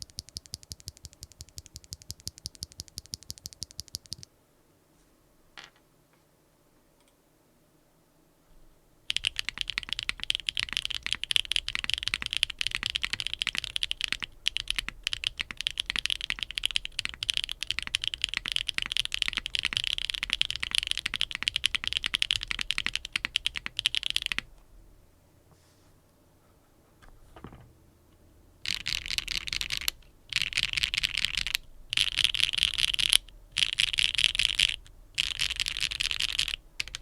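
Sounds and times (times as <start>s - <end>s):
fast typing on mechanical keyboard: 0.0s - 4.3s, 9.1s - 24.5s, 28.6s - 37.0s.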